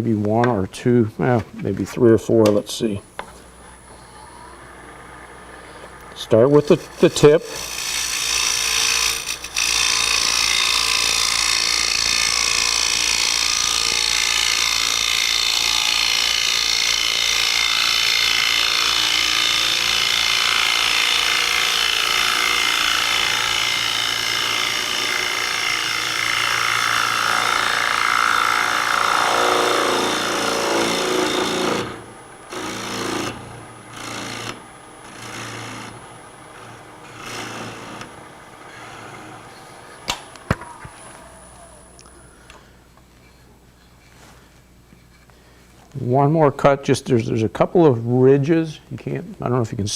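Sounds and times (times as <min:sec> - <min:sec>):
lathe gouge scraping wood: 0:05.5 - 0:40.0.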